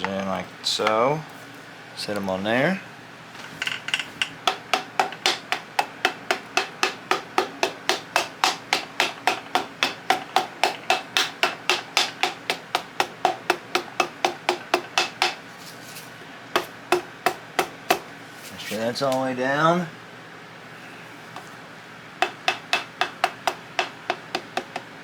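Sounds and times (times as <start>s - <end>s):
hammer tapping piston: 4.2s - 15.4s, 22.2s - 24.9s.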